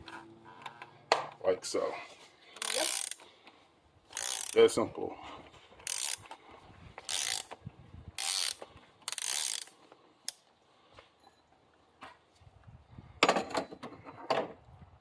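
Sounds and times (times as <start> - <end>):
socket ratchet clicking: 2.6 - 3.2, 4.1 - 4.6, 5.8 - 6.3, 7.0 - 7.5, 8.2 - 10.4.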